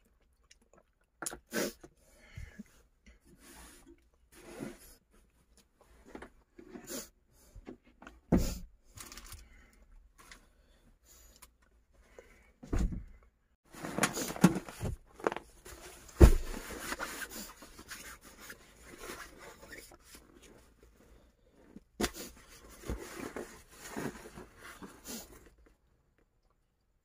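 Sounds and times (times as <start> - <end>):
dull thumps: 16.1 - 16.7.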